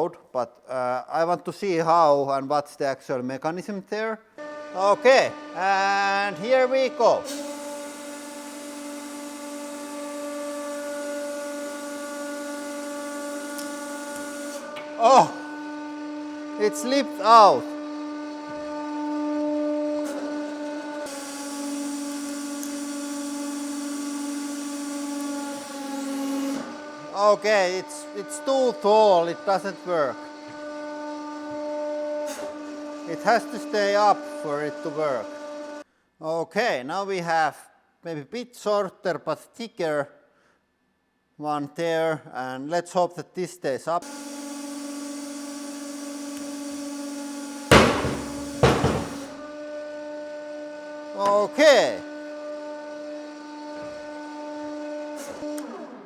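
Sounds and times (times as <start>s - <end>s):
hydraulic pump humming: 4.4s - 16.0s, 47.7s - 49.5s
hydraulic pump motor whining: 4.4s - 27.2s, 44.0s - 49.6s
string roll bursting with bangs: 47.7s - 49.4s.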